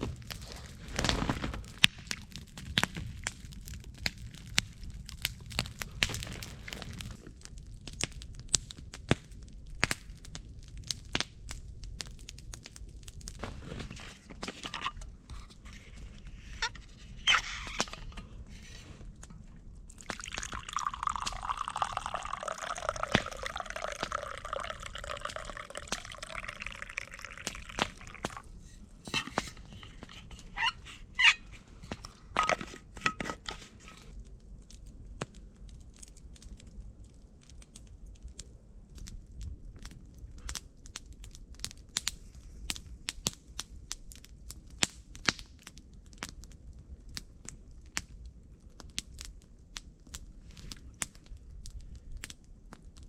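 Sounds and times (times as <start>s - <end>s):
liquid pouring: 19.9s - 34.0s.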